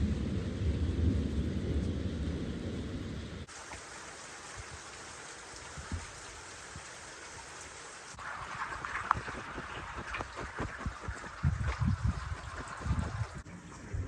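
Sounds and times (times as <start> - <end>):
low rumbling thunder: 0.0 - 3.5, 11.3 - 14.0
rain hissing: 0.0 - 14.0
water drips: 3.4 - 14.0.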